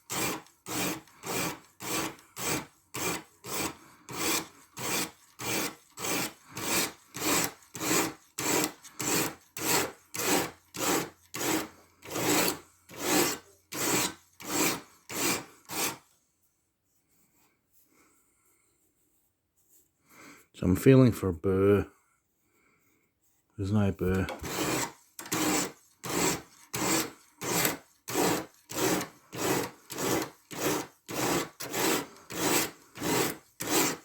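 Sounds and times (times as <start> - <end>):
knife scraping on sharpening stone: 24.3 - 34.0.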